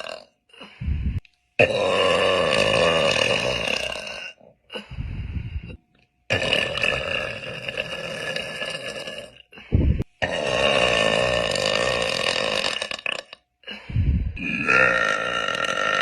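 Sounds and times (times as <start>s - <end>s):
woman burping: 14.4s - 16.0s.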